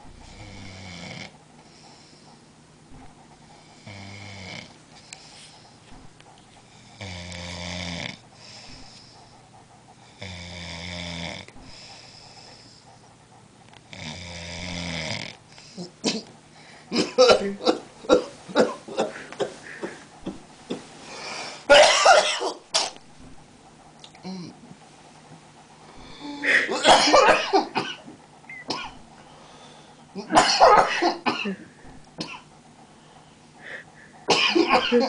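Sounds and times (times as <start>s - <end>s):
person snoring: 0.2s - 1.3s, 3.6s - 4.8s, 6.7s - 9.2s, 10.1s - 12.6s, 13.9s - 15.9s, 26.0s - 26.7s.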